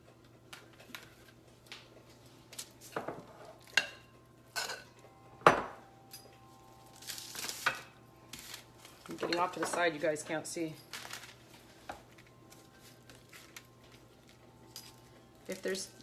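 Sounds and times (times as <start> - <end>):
dishes and utensils clattering: 2.8 - 6.4, 9.0 - 12.1.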